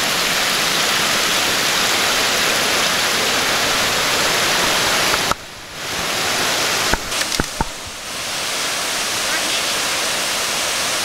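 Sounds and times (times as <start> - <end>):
waterfall rushing: 0.0 - 11.0
sharp clicks: 6.9 - 7.8.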